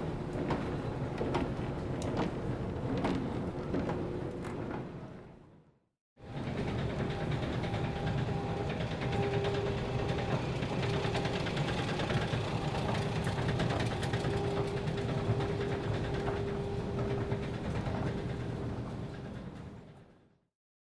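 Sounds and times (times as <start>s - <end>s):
escalator mechanical hum: 6.3s - 19.7s.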